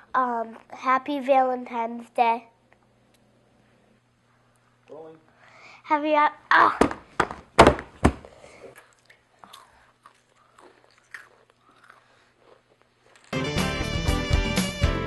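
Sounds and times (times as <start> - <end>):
band music with drums and guitar: 13.4 - 15.0.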